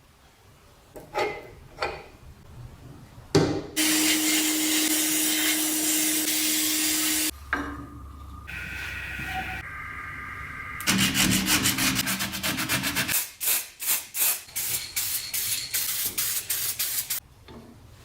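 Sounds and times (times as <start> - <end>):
steady whine: 5.7 - 12.0
rhythmic scraping strokes: 10.9 - 13.2.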